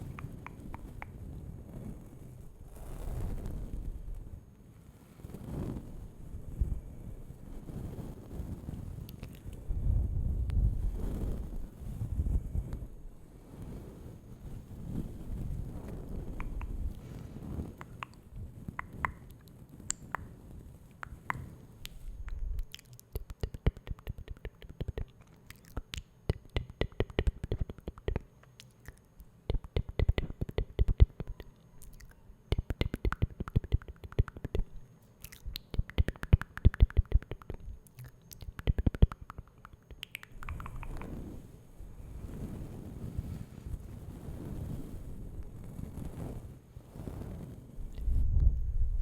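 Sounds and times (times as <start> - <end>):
soft low rustle: 0.0 - 49.0
wet mouth clicks and smacks: 16.4 - 16.8, 17.8 - 18.2, 18.8 - 20.3, 21.0 - 41.2.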